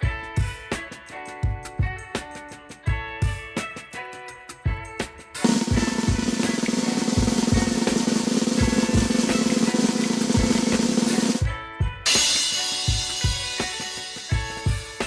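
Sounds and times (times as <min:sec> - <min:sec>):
bass drum beat: 0:05.4 - 0:11.5, 0:12.4 - 0:15.0
snare drum roll: 0:05.4 - 0:11.5, 0:12.1 - 0:15.0
plucked notes and kick drum: 0:05.4 - 0:15.0.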